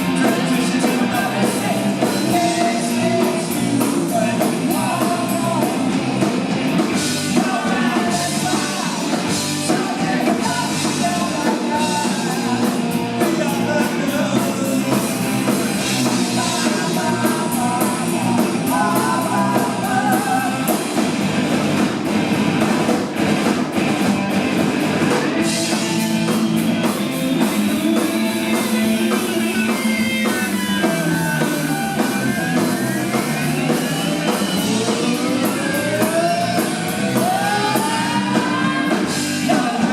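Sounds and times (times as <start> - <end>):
person singing: 0.0 - 21.0, 25.4 - 39.9
live rock band: 0.0 - 39.9.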